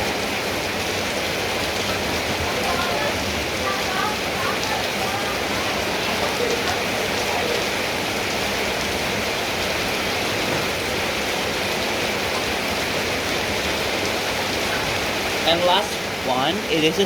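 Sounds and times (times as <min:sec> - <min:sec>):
heavy rain pattering: 0:00.0 - 0:17.0.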